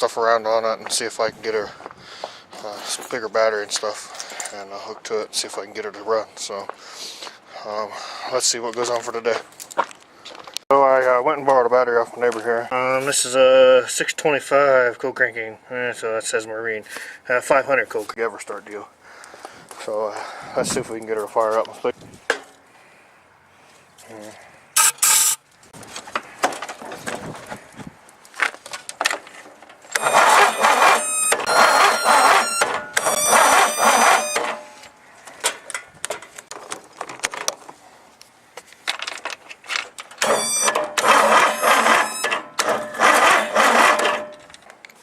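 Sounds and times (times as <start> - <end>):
high squealing whine: 24.8 - 25.4, 30.0 - 34.9, 40.2 - 44.4
starter motor cranking engine: 30.0 - 34.8, 40.2 - 44.5.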